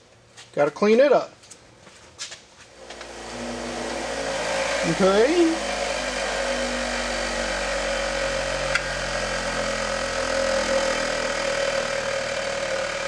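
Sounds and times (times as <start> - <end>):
bench grinder humming: 2.7 - 13.0.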